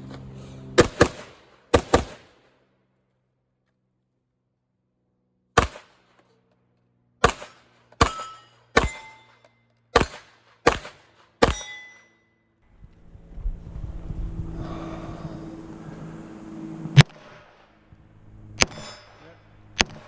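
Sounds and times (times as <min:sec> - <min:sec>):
rifle shots: 0:00.8 - 0:02.6, 0:05.6 - 0:06.2, 0:07.2 - 0:09.3, 0:09.9 - 0:11.7, 0:18.6 - 0:20.0
metallic ring: 0:08.0 - 0:09.8, 0:11.4 - 0:12.6, 0:18.6 - 0:19.6
low rushing noise: 0:12.6 - 0:20.0.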